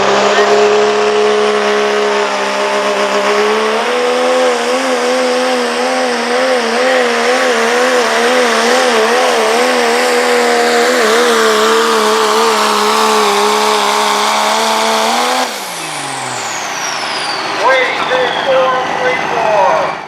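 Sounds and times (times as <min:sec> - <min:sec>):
pickup truck engine at high revs: 0:00.0 - 0:20.0.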